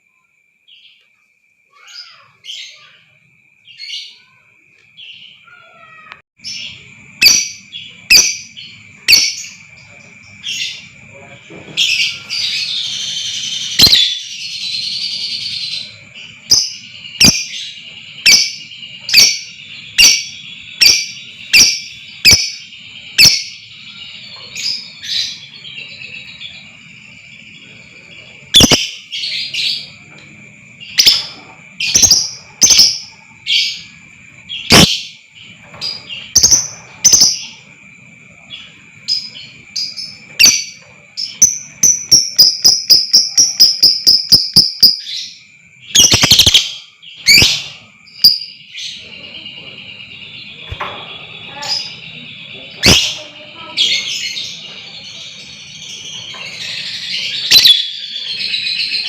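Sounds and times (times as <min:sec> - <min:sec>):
lovebirds chirping: 0:01.7 - 0:59.0.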